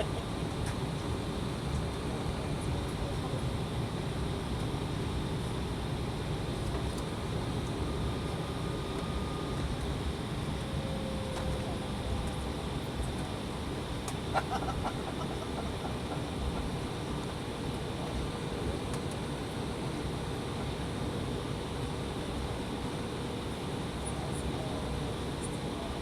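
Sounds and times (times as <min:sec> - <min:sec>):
airliner cabin rumble: 0:00.0 - 0:19.4.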